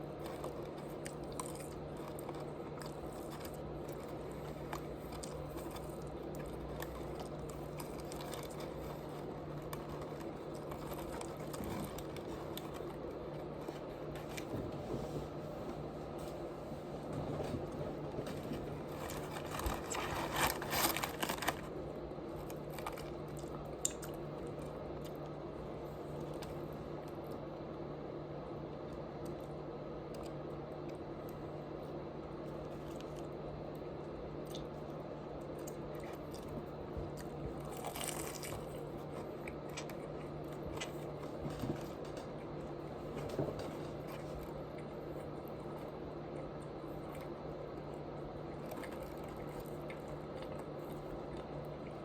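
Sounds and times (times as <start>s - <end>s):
crunchy clicks: 0.0s - 14.5s, 18.1s - 25.4s
chewing and mouth sounds: 0.0s - 14.6s, 18.2s - 27.4s, 32.4s - 52.0s
low electrical hum: 0.0s - 52.0s.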